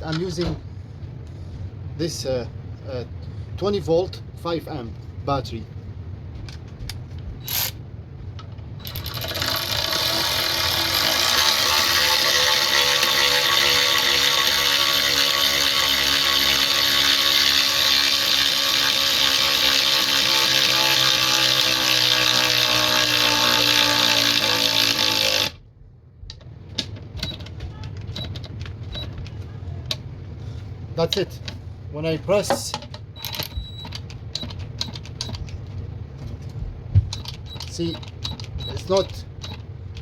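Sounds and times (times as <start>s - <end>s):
electric ratchet driving a bolt: 7.4s - 7.8s, 8.8s - 25.6s.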